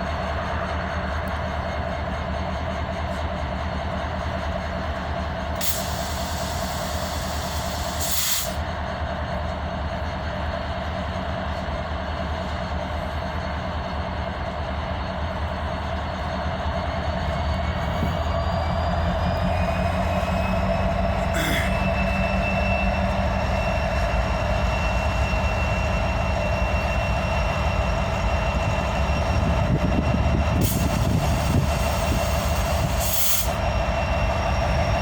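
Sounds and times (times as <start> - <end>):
locomotive rumble and whine: 0.0 - 35.0
hissing air burst: 5.6 - 8.6.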